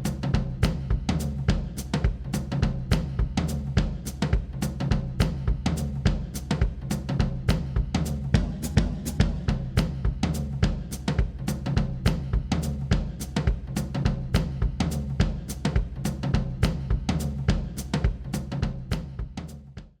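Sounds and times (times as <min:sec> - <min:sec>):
drum kit beat: 0:00.0 - 0:20.0
low bass line: 0:07.2 - 0:10.6.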